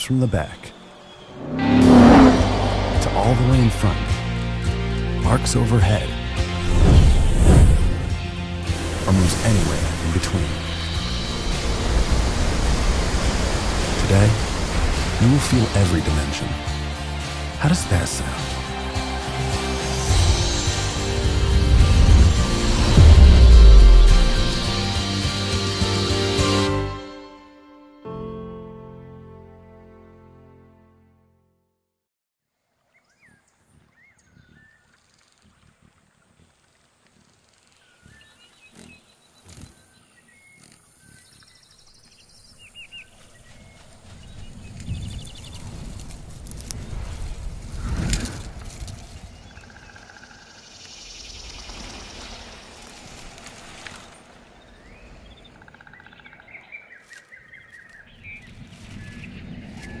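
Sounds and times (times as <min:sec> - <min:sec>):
birds chirping and trilling: 0:00.0 - 0:06.4, 0:32.9 - 0:35.0, 0:37.8 - 0:46.0, 0:49.0 - 0:53.2, 0:53.9 - 1:00.0
music: 0:02.4 - 0:31.9
rushing hiss: 0:08.6 - 0:15.2
heavy thump: 0:22.8 - 0:24.8
rustling of animal movement: 0:51.4 - 0:55.2.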